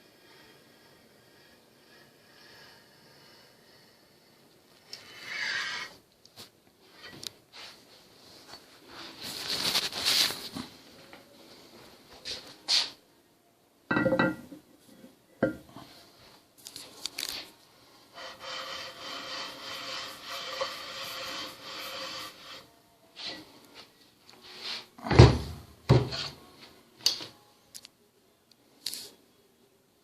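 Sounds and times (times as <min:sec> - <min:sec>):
metal scraper strokes: 0:05.0 - 0:06.0, 0:18.1 - 0:23.4
metal-on-metal rubbing: 0:05.0 - 0:06.0, 0:18.1 - 0:22.7.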